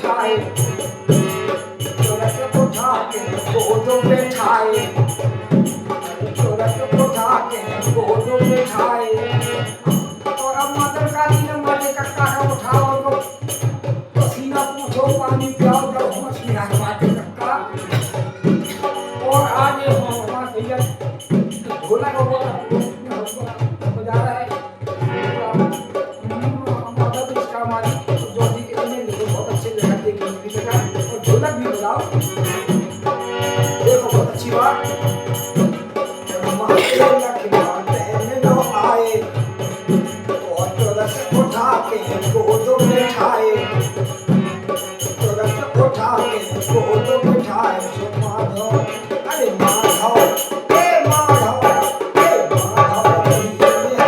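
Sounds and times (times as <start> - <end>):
jingling percussion: 0.0 - 54.0
fast drum beat: 25.6 - 43.3, 44.1 - 54.0.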